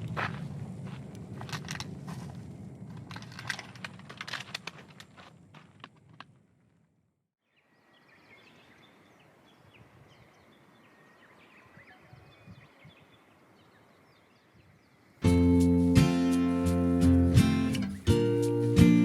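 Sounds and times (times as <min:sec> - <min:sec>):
small birds chirping: 0:07.5 - 0:19.0.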